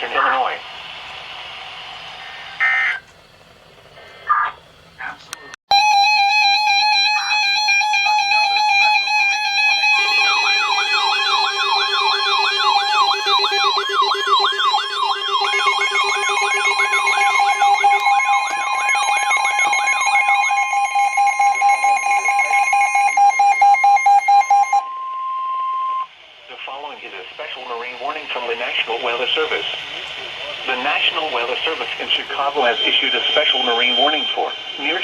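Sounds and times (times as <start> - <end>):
rising and falling siren sweep: 5.8 - 26.2
warbling beep tone: 6.9 - 26.1, 32.4 - 35.0
steady single tone: 10.2 - 26.1.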